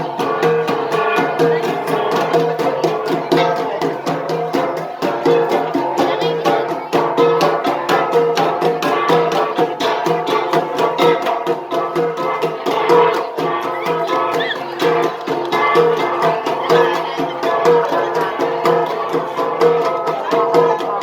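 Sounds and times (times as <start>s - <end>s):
bronze gongs beaten in rhythm: 0.0s - 21.0s.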